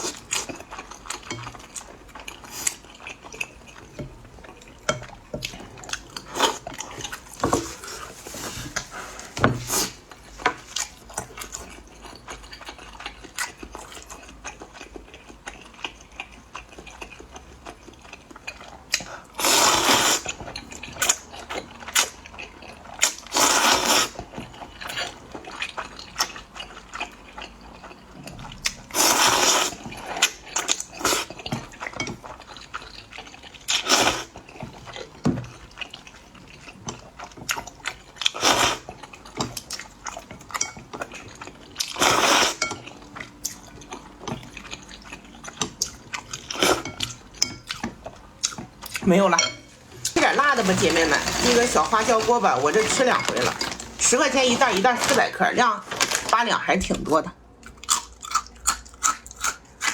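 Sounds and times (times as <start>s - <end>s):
loud noodle slurps: 19.4s - 20.3s, 23.3s - 24.2s, 28.9s - 29.8s.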